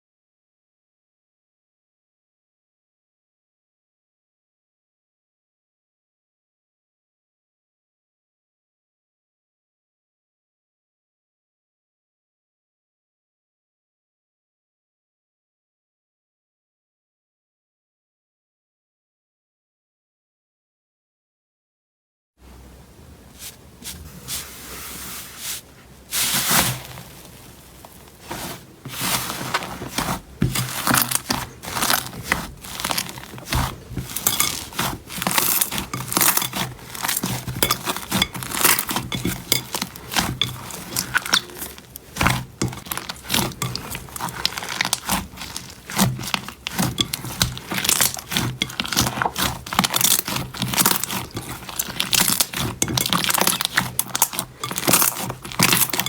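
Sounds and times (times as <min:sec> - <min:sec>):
slime crackling and popping: 0:26.4 - 0:56.0.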